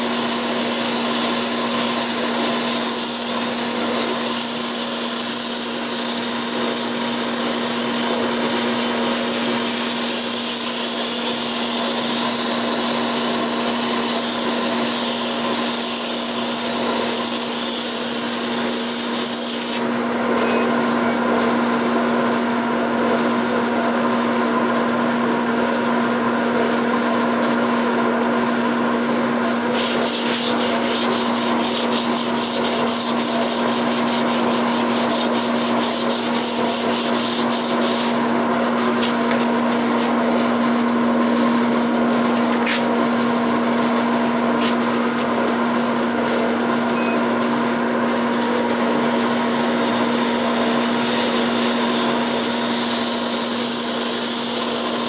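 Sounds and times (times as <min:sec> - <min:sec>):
sandpaper rubbing on spinning wood: 0:00.1 - 0:19.8, 0:29.7 - 0:38.2, 0:48.3 - 0:55.0.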